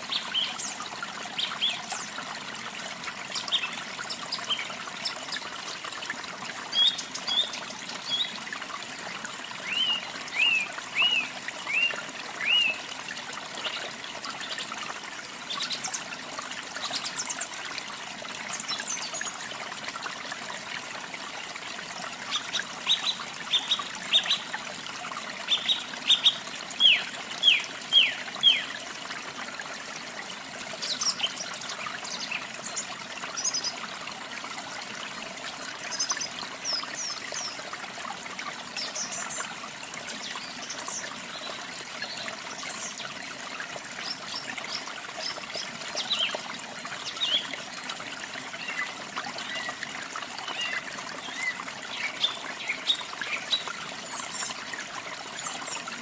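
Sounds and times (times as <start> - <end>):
running water: 0.0 - 56.0
songbirds calling: 9.6 - 12.9, 22.2 - 24.5, 25.4 - 28.8.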